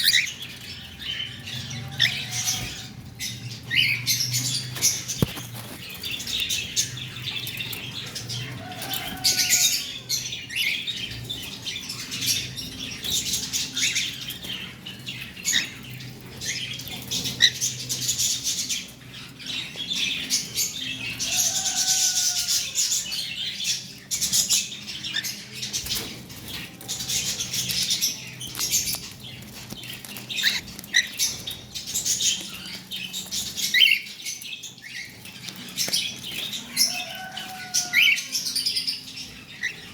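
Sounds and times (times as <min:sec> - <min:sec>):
bird pecking and crunching food: 0:04.7 - 0:09.8, 0:25.7 - 0:38.2.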